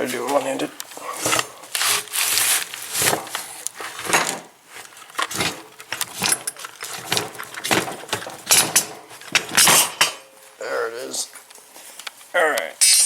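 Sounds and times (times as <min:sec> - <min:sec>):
metallic clinks and scrapes: 0:01.2 - 0:10.2, 0:12.8 - 0:13.0.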